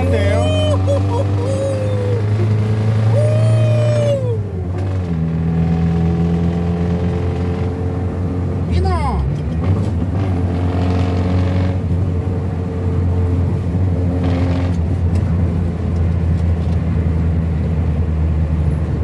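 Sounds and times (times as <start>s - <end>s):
car engine drone: 0.0s - 19.0s
road noise: 0.0s - 19.0s.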